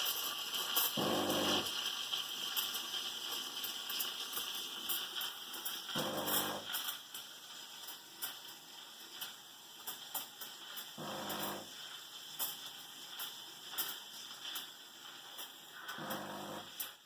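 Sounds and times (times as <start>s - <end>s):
steam wand hissing: 0.0s - 17.0s
pump humming: 1.0s - 1.8s, 6.0s - 6.7s, 11.0s - 11.7s, 15.9s - 16.8s.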